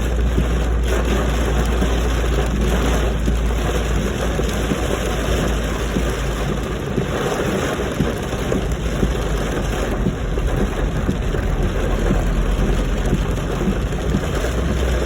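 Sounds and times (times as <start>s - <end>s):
rain pattering on a car: 0.0s - 15.0s
steady low rumble: 0.0s - 15.0s.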